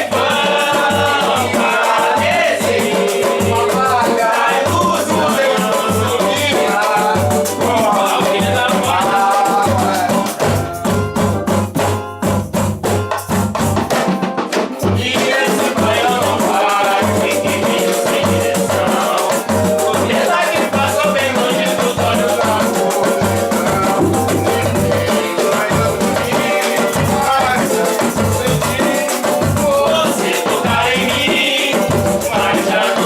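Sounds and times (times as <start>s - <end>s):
samba band music: 0.0s - 33.0s
low drum beat: 21.9s - 28.9s.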